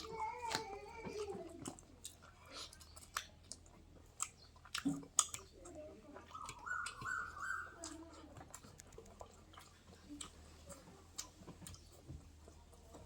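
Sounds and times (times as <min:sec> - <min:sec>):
person chewing food: 0:00.0 - 0:13.0
wet mouth clicks and smacks: 0:01.6 - 0:11.9.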